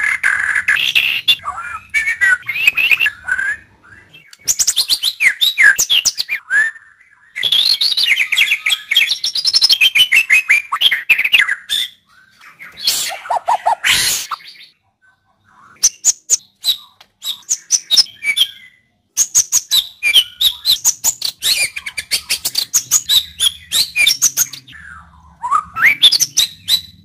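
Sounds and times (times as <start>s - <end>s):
bird singing whistles and chatter: 0.0s - 27.0s.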